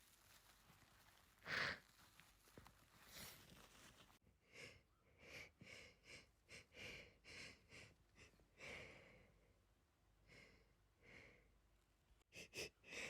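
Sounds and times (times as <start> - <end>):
breathy sniffs through nose: 1.4 - 1.9.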